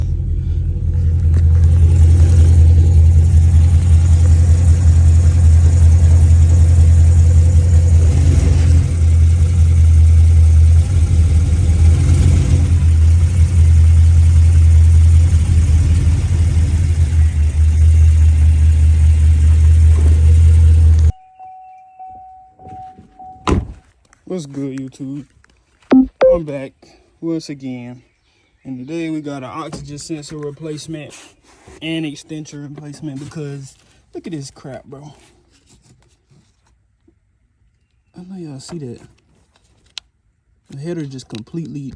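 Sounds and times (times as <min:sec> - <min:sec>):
deep car exhaust rumble: 0:00.0 - 0:21.1.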